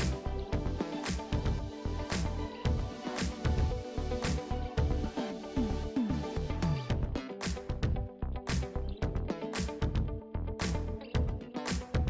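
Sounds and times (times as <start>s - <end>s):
electronic dance music: 0.0s - 7.7s.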